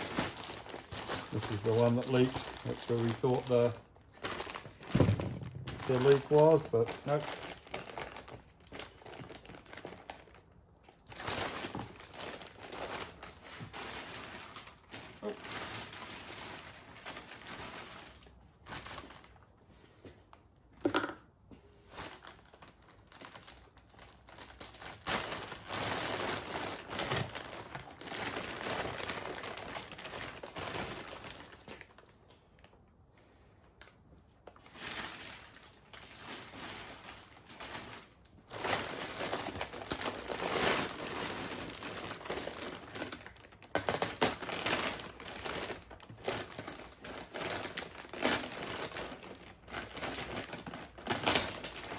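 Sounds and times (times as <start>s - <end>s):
plastic film crinkling: 0.0s - 19.6s, 21.9s - 32.8s, 33.8s - 51.9s.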